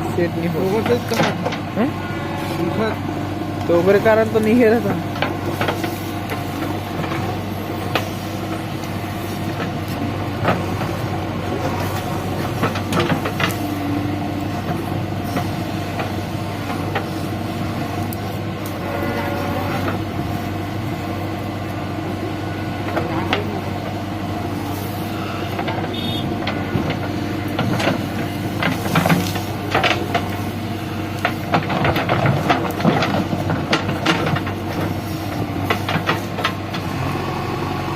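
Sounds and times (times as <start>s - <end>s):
diesel engine running: 0.0s - 37.9s
machine knocks and clatter: 0.6s - 1.7s, 4.4s - 8.7s, 9.4s - 17.2s, 25.6s - 30.5s, 31.2s - 36.9s.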